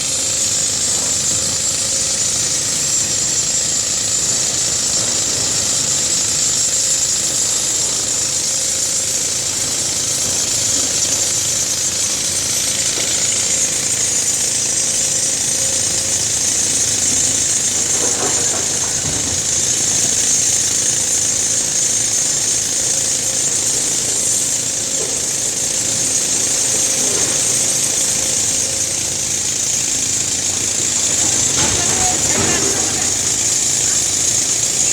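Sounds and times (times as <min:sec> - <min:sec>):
excavator diesel engine running: 0:26.1 - 0:34.9
faint knocks: 0:30.8 - 0:34.5.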